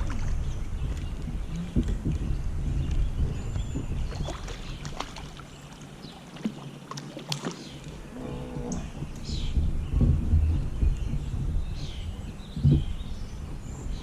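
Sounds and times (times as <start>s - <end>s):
low rumble: 0.0s - 5.4s, 7.9s - 14.0s.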